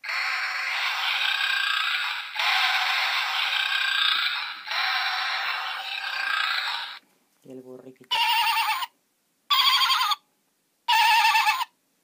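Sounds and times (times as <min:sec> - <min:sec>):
toy lion roar through tiny speaker: 0:00.0 - 0:07.0.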